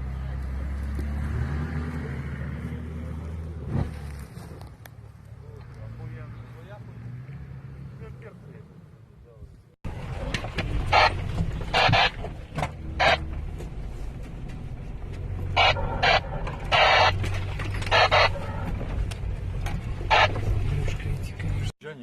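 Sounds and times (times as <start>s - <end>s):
off-road vehicle engine humming: 0.0s - 21.8s
harsh noisy bursts: 10.9s - 12.2s, 15.6s - 17.3s, 17.9s - 18.6s, 20.1s - 20.4s.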